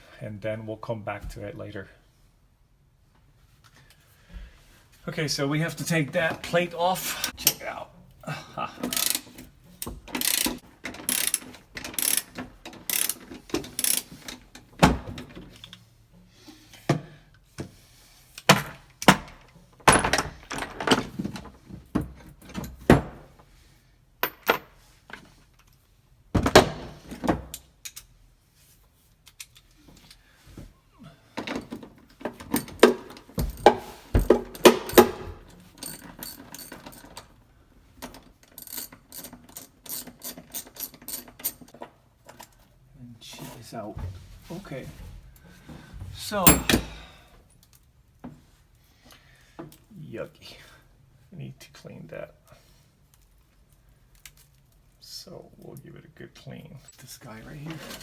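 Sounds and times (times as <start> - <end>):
ratchet wrench clicking: 8.9 - 9.3, 10.1 - 13.2, 13.8 - 14.1.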